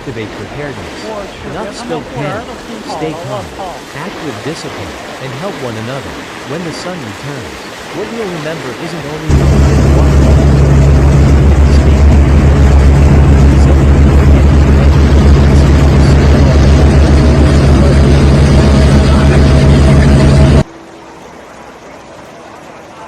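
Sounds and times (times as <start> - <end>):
heavy engine rumbling: 8.0 - 23.0.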